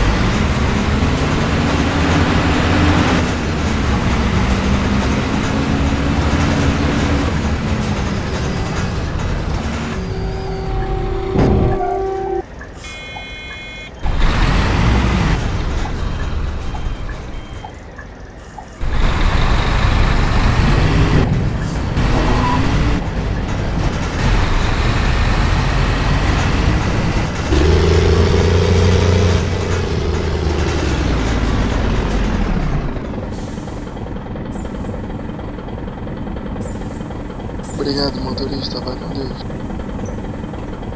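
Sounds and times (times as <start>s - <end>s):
bus diesel engine accelerating: 0.0s - 40.9s
short electronic beeps: 10.0s - 14.0s, 16.6s - 18.1s.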